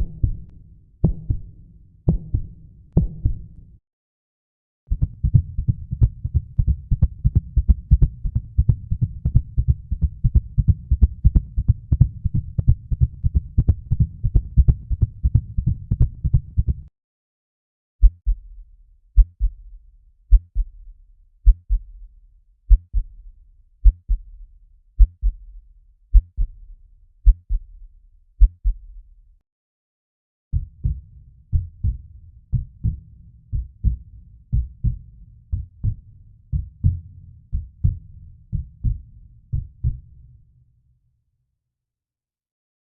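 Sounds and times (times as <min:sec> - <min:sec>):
heartbeat thumps: 0:00.0 - 0:03.6, 0:04.9 - 0:16.9, 0:19.2 - 0:19.7, 0:30.6 - 0:37.0.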